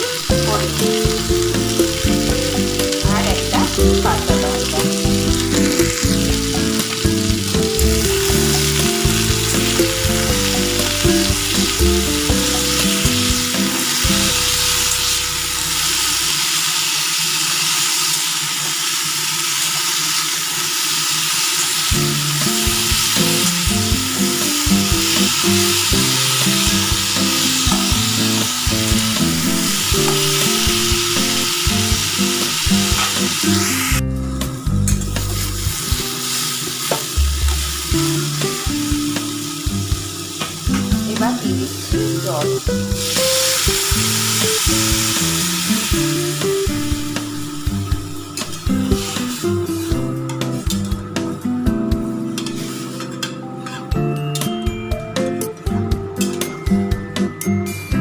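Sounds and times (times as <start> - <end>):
potatoes sizzling in hot oil: 0.0 - 53.3
stirring in a pan: 52.1 - 53.9.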